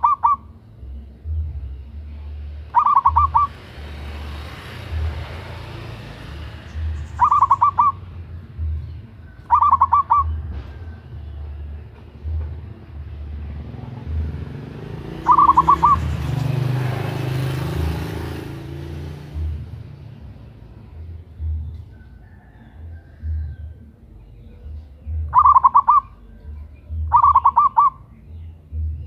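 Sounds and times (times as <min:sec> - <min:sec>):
zebra dove calling: 0:00.0 - 0:00.7, 0:02.7 - 0:03.7, 0:06.8 - 0:08.7, 0:09.4 - 0:10.9, 0:15.1 - 0:16.6, 0:22.8 - 0:28.4.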